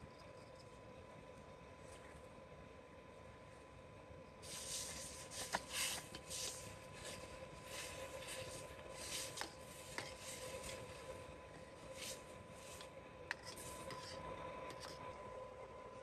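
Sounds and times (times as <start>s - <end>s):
faint steady hum: 0.0s - 16.0s
utensils scraping a pot: 12.8s - 15.0s.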